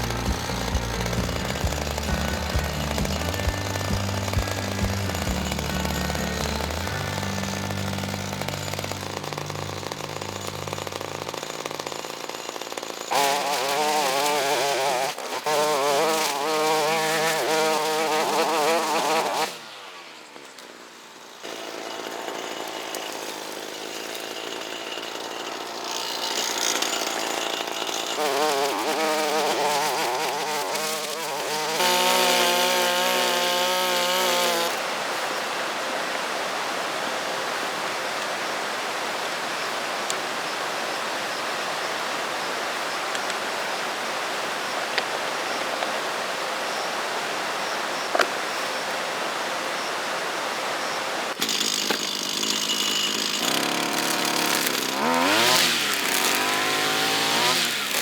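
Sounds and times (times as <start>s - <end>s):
brush cutter engine running: 0.0s - 19.7s, 21.4s - 34.9s, 51.3s - 58.0s.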